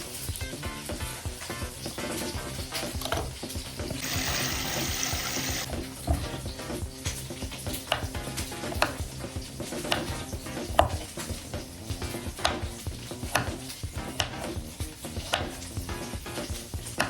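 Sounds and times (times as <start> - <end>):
food sizzling in a pan: 0.0 - 6.0
utensil clicking against pan: 7.0 - 17.0.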